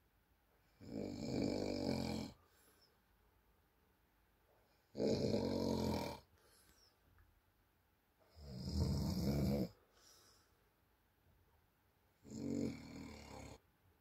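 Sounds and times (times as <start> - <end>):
woman snoring: 0.8 - 2.4, 4.9 - 6.3, 8.3 - 9.8, 12.2 - 13.6.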